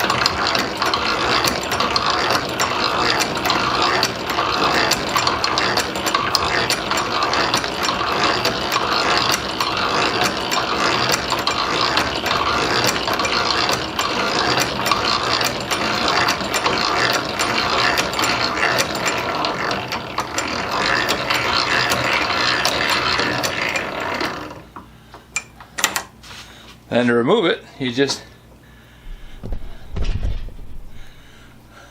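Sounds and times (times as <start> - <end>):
drill press grinding into steel: 0.0 - 24.8
feed pawl clicking: 0.0 - 26.1.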